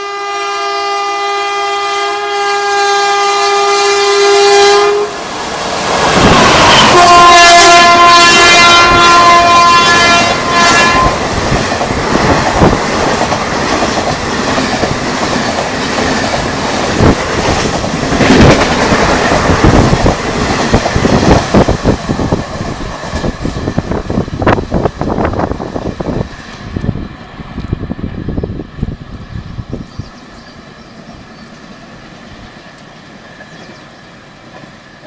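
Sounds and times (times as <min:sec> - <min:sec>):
locomotive horn blast: 0:00.0 - 0:05.3, 0:06.2 - 0:11.4
train wheels clattering: 0:11.0 - 0:25.3.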